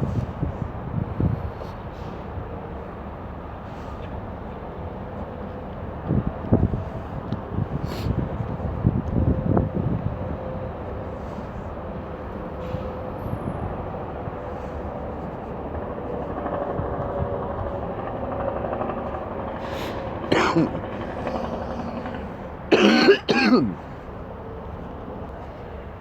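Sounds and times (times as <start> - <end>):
low background rumble: 4.2 - 26.0
person clearing throat: 20.3 - 22.1, 22.7 - 23.8.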